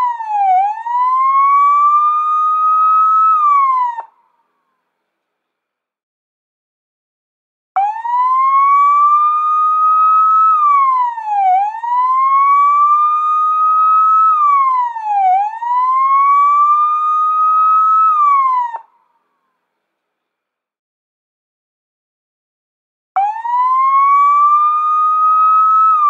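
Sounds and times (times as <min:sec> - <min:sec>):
police siren wailing: 0:00.0 - 0:04.1, 0:07.8 - 0:18.9, 0:23.2 - 0:26.0.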